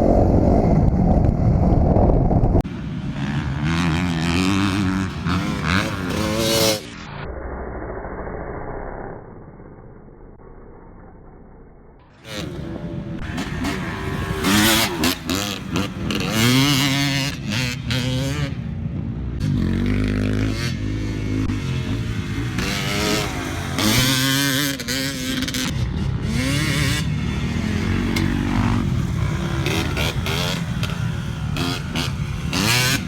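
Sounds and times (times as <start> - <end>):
wind rush: 0.0 - 3.3
motorbike engine revving: 3.1 - 7.1, 12.1 - 33.0.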